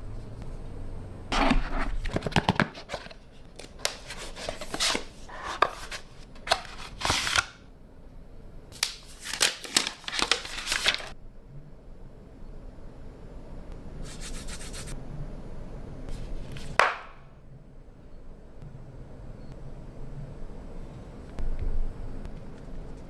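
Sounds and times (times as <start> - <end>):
packaging clicks taps and rustling: 2.0 - 7.4, 8.8 - 11.1.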